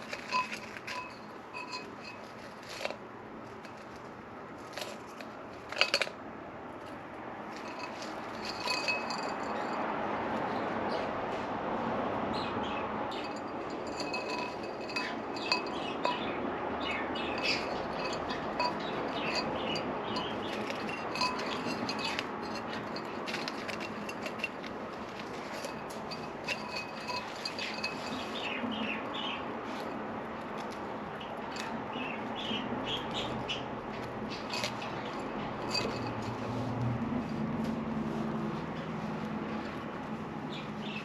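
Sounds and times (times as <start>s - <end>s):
clicks and taps inside a vase: 0.0s - 3.0s, 7.5s - 9.8s, 13.1s - 32.2s, 34.0s - 36.4s
bird chirping softly: 12.3s - 24.3s, 25.4s - 30.0s, 30.6s - 36.1s, 40.4s - 41.0s.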